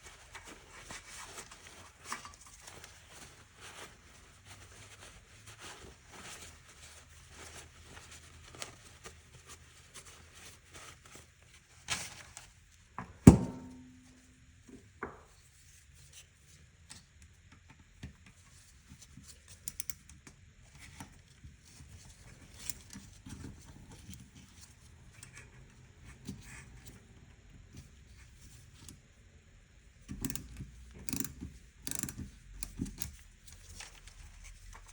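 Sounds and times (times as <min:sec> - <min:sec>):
tools clicking and tapping: 0:30.1 - 0:33.2.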